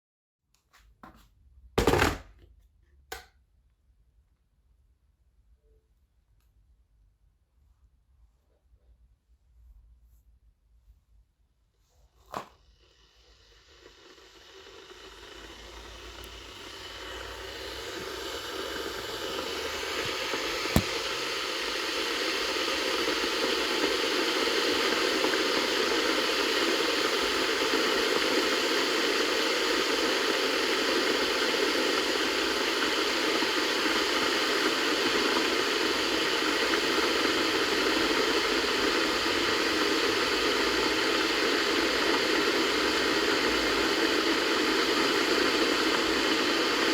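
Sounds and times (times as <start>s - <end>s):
kettle hissing: 12.2s - 46.9s
kettle click: 17.9s - 21.5s.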